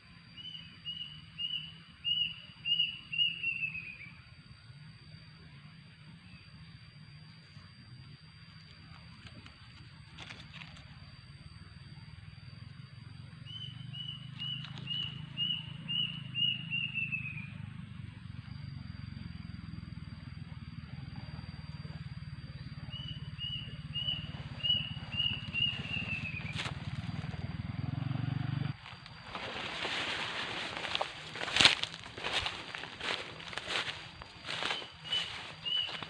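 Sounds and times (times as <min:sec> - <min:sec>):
steady low hum: 0:00.0 - 0:36.0
bird whistling calls: 0:00.3 - 0:04.2, 0:13.4 - 0:17.6, 0:22.6 - 0:27.3, 0:28.8 - 0:36.0.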